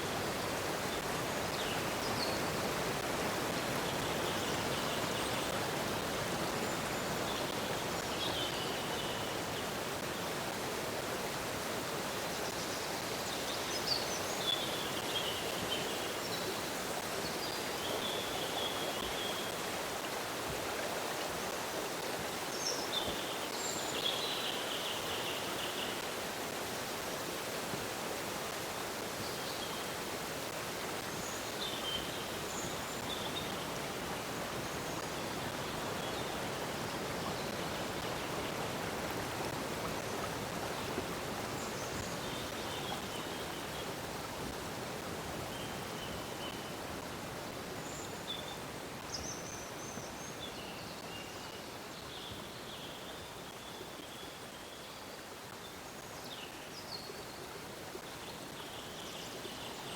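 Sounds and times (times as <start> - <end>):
flowing water rushing: 0.0 - 59.9.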